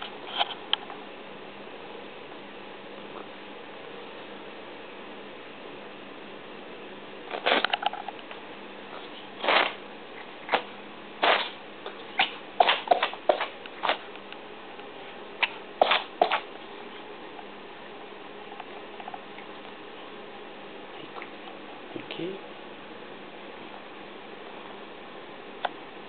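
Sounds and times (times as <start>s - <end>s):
animal sneezing: 15.8s - 16.4s.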